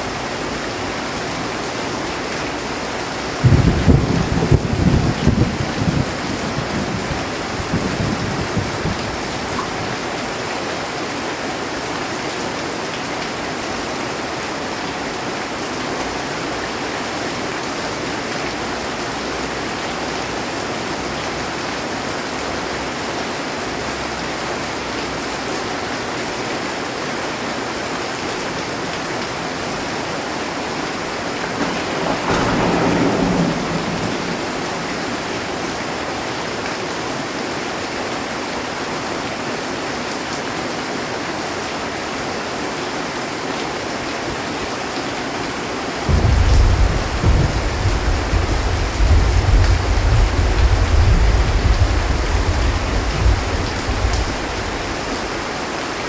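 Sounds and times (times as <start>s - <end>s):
thunder rolling: 0.0s - 10.1s, 29.5s - 37.3s, 46.0s - 55.6s
heavy rain on a metal roof: 0.0s - 56.0s.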